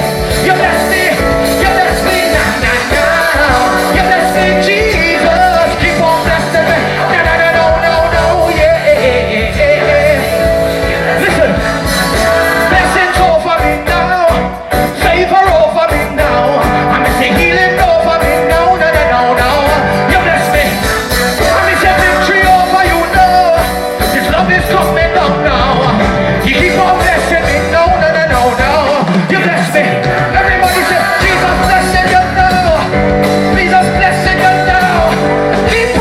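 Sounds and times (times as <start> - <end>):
live band playing gospel: 0.0 - 36.0
person singing: 0.0 - 36.0.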